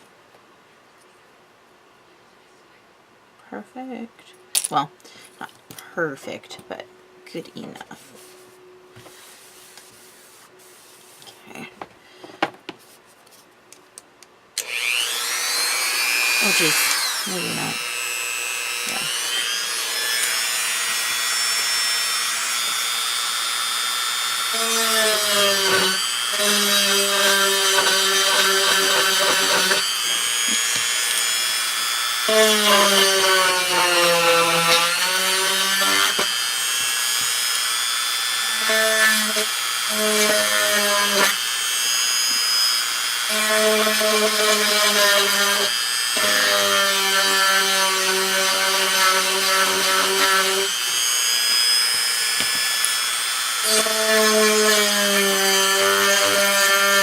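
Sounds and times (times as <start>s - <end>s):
electric drill whining: 14.6s - 57.0s.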